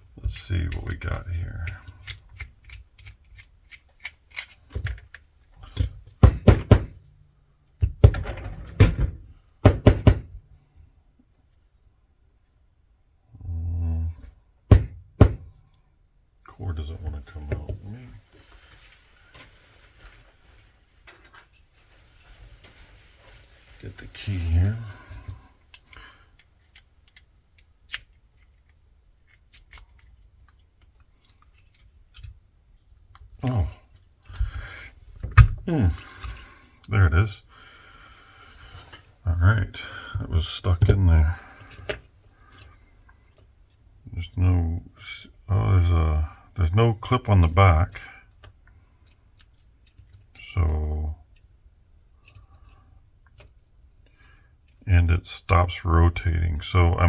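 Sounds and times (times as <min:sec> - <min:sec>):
padlock heavy knocks: 0:06.2 - 0:07.0, 0:07.8 - 0:10.4, 0:14.7 - 0:15.6.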